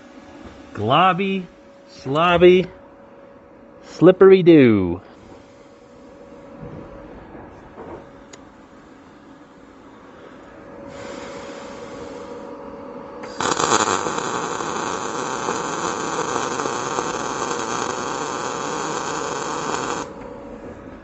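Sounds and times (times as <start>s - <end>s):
welding hiss: 10.9s - 12.5s, 13.2s - 20.2s
crackling welding arc: 13.2s - 20.2s.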